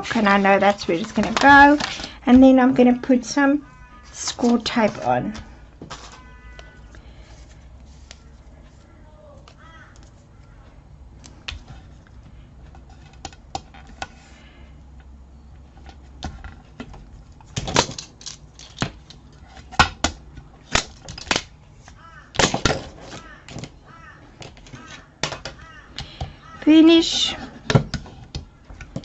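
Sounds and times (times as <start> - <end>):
tape clicks and crackles: 4.3 - 14.2.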